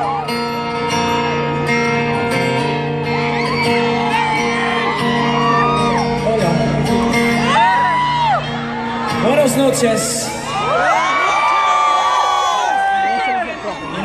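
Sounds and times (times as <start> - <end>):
crowd screaming and whooping: 0.0 - 14.0
ringing acoustic guitar chord: 0.2 - 10.7.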